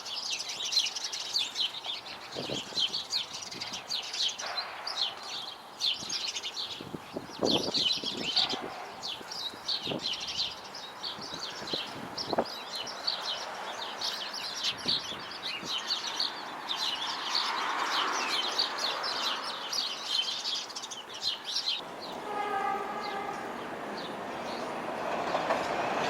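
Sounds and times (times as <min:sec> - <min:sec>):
small birds chirping: 0:00.0 - 0:25.8
subway train whine: 0:21.8 - 0:26.0.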